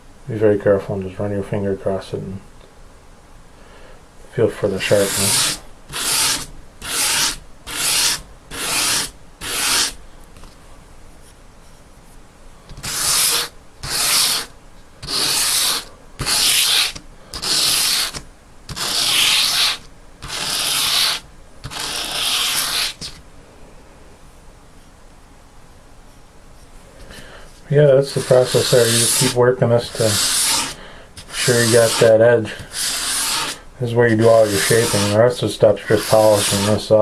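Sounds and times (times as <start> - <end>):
knife scraping on sandpaper: 4.8 - 10.0, 12.7 - 23.2, 27.5 - 37.0.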